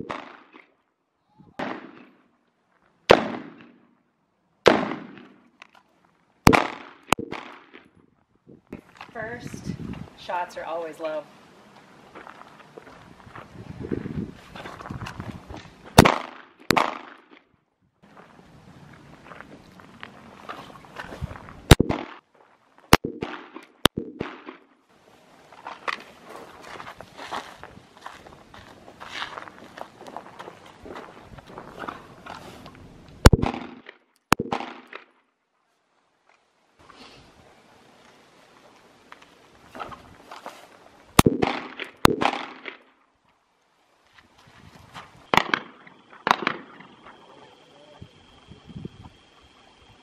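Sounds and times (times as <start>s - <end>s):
sharp crack: 0.0s - 0.8s, 1.5s - 2.2s, 3.1s - 3.9s, 4.6s - 5.8s, 6.4s - 8.0s, 15.9s - 17.5s, 21.7s - 22.3s, 33.2s - 35.2s, 41.2s - 43.0s, 45.3s - 46.8s
pistol shots with echo: 1.6s - 2.2s, 3.1s - 3.8s, 6.5s - 7.7s, 16.0s - 17.4s, 33.2s - 33.8s, 34.4s - 35.0s, 41.2s - 42.8s, 45.3s - 46.9s
pistol shots with short echo: 16.0s - 17.4s.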